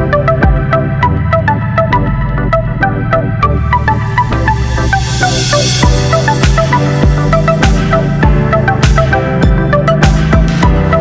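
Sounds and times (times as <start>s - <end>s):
fast repeating synth melody: 0.0s - 11.0s
steady bass: 0.0s - 11.0s
hard drum hit: 5.8s - 10.8s.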